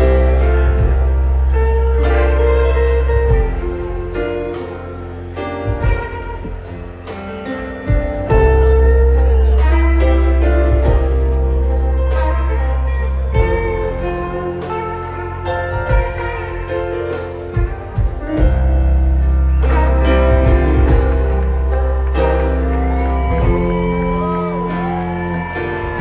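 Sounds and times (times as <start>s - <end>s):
electric guitar: 0.0s - 26.0s
steady bass: 0.0s - 26.0s.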